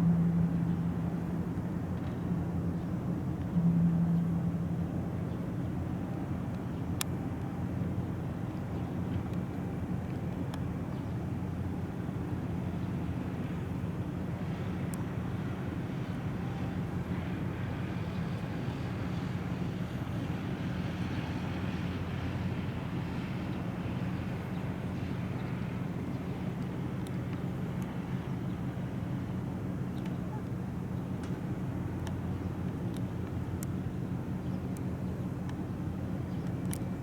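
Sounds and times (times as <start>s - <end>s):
ship engines humming: 0.0s - 10.4s, 11.2s - 37.0s.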